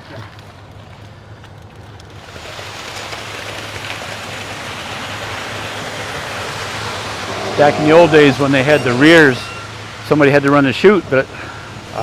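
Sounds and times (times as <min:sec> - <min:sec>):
wet concrete rushing down chute: 0:01.9 - 0:11.9
truck engine humming: 0:04.1 - 0:12.0.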